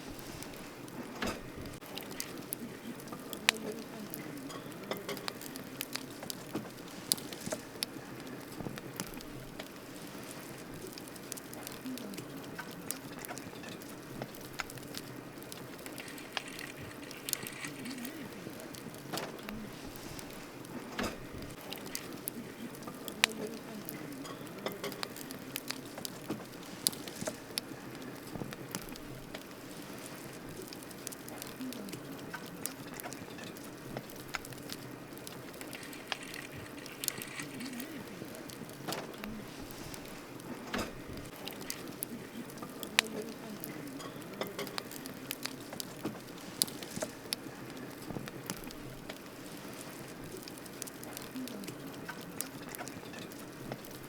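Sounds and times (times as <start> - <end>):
campfire crackling and popping: 0.0 - 54.0
fire soft hiss: 0.0 - 54.0.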